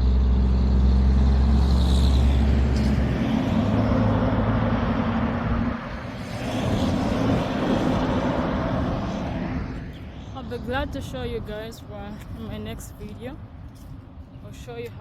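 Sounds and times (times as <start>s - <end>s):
vehicle engine humming: 0.0s - 15.0s
broad rushing noise: 1.3s - 13.3s.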